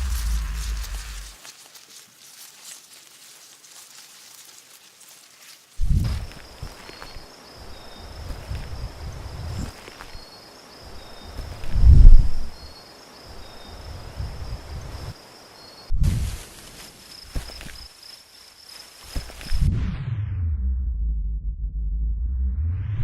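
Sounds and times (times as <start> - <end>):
low rumbles and thuds: 0.0 - 1.4
insects chirring: 0.0 - 19.7.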